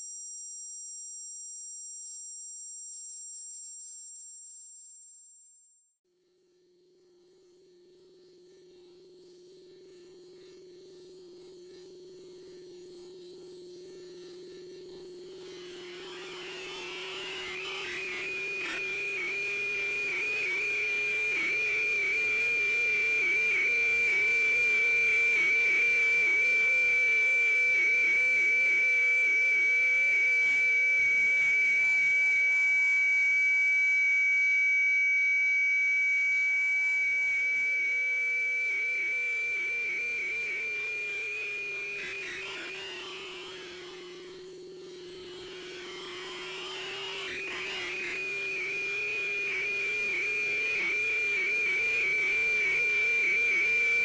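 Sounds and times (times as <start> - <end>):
mid-high electronic tone: 13.3 - 54.0
high whistle-like tone: 15.4 - 54.0
low wavering tone: 15.4 - 54.0.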